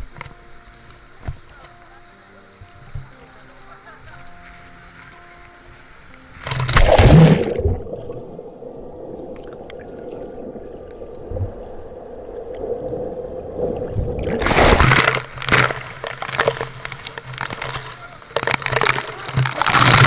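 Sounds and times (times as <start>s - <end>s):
rush of falling water: 0.0s - 20.0s
water splash: 6.4s - 20.0s
steady hum: 6.7s - 16.2s
muffled underwater rumble: 6.7s - 20.0s.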